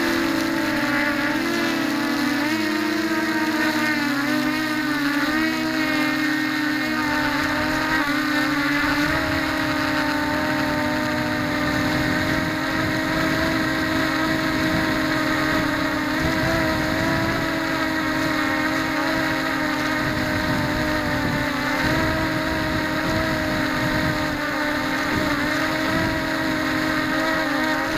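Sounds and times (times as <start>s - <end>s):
drone motors whining: 0.0s - 27.9s
wind buffeting microphone: 7.1s - 27.2s.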